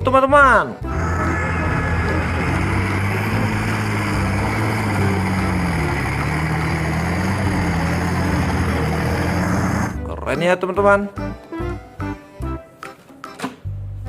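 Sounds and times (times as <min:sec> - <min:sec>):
vehicle engine running: 0:00.8 - 0:10.0
rushing noise: 0:00.9 - 0:10.0.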